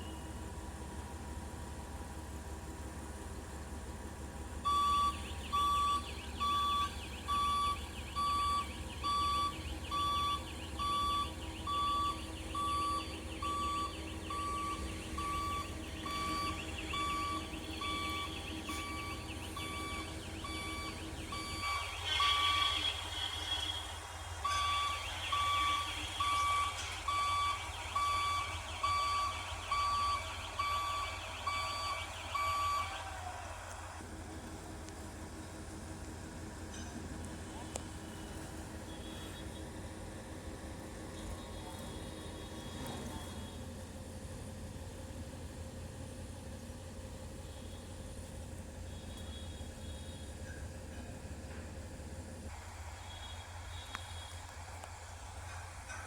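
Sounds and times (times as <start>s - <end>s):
diesel engine rumble: 0.0s - 56.0s
machine warning beeper: 4.7s - 33.1s.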